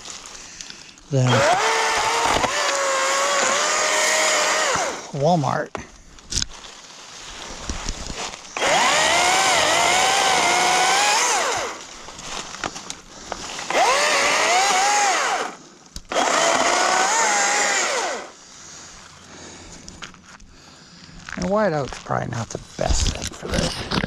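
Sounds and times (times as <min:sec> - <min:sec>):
chainsaw cutting wood: 0:01.2 - 0:05.2, 0:08.5 - 0:11.9, 0:13.4 - 0:18.4.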